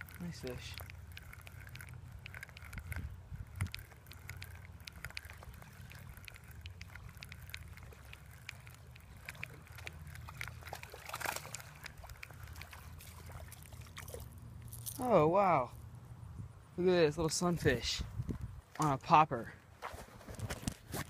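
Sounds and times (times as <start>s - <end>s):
light clicks and ticks: 0.0s - 15.0s
water sloshing and trickling: 0.0s - 15.2s
low steady rumble: 0.0s - 18.7s
water splash: 7.8s - 14.4s.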